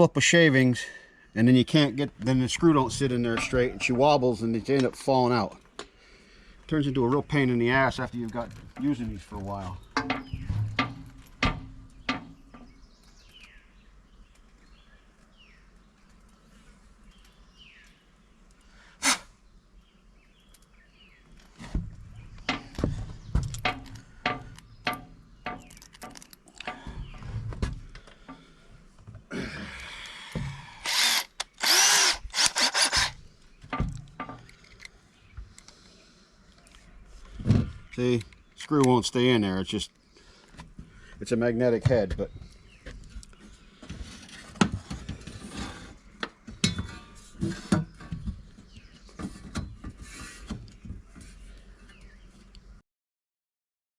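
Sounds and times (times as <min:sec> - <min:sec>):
power drill driving screw into metal: 0:30.8 - 0:33.2
screws and driver clicking: 0:30.8 - 0:33.2.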